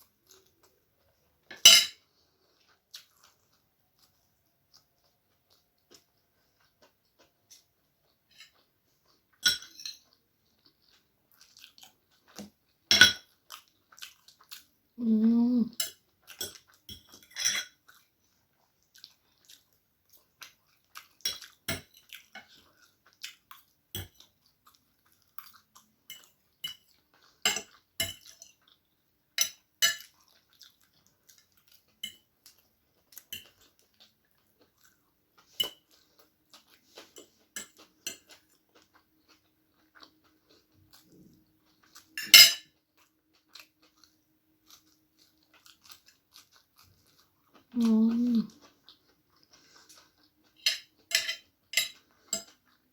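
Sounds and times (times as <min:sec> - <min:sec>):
cutlery clicking on a plate: 0:26.1 - 0:28.6, 0:29.4 - 0:30.1, 0:42.2 - 0:42.7, 0:50.6 - 0:52.6.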